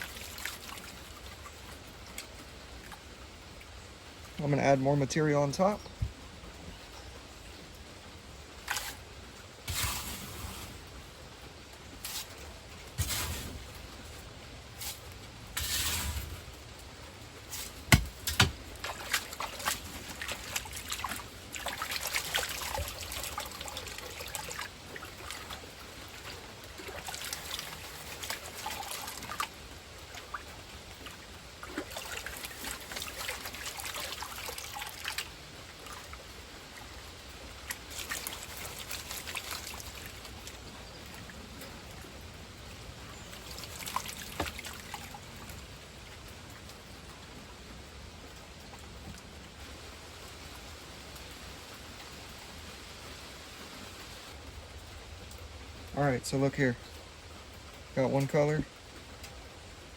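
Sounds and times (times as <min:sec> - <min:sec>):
water sloshing in plastic pan: 0:00.0 - 0:03.1, 0:08.6 - 0:11.0, 0:14.8 - 0:42.1, 0:43.1 - 0:45.7.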